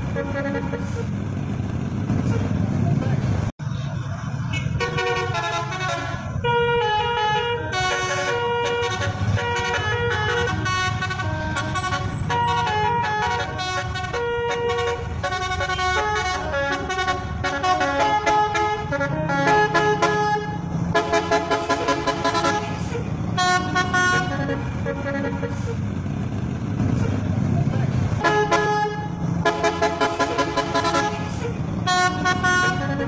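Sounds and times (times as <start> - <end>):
bus engine rumble: 0.0 - 33.0
musical air horn tune: 4.8 - 25.8, 28.2 - 33.0.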